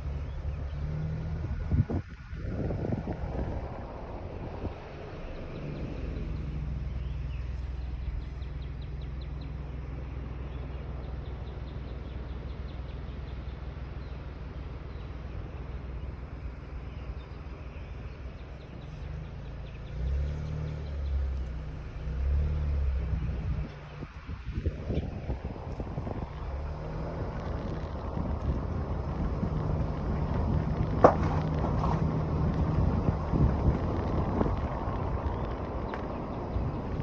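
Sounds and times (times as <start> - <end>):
car engine and road rumble: 0.0 - 37.0.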